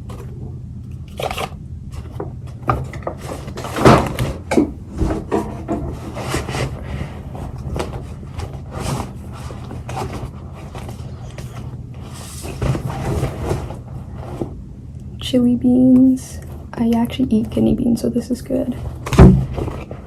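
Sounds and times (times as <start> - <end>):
packaging rustling: 5.8 - 14.6.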